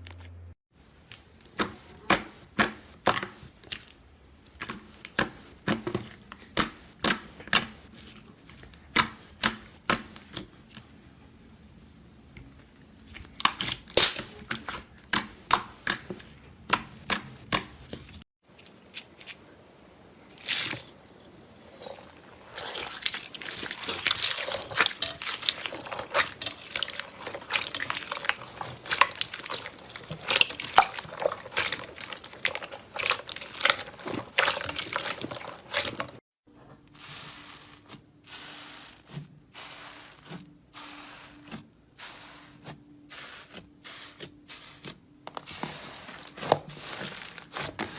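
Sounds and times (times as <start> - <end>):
slime crackling and squishing: 13.0 - 18.0, 22.4 - 36.2, 37.0 - 47.9.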